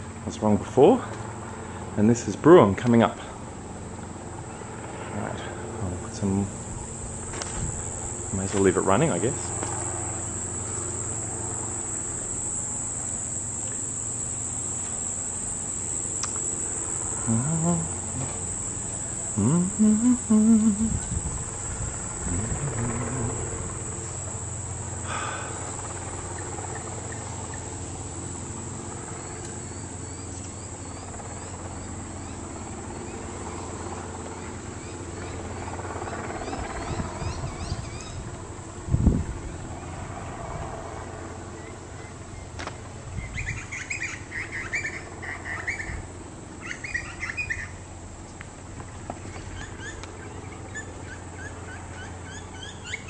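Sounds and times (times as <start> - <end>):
low steady hum: 0.0 - 53.0
high-pitched insect drone: 0.8 - 53.0
short sounds with bending pitch: 10.3 - 25.2.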